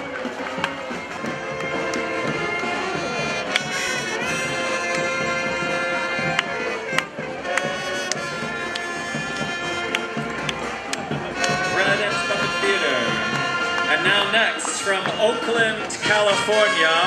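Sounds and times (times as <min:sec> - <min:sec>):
brass band playing: 0:00.0 - 0:17.0
sharp percussion hits: 0:00.0 - 0:17.0.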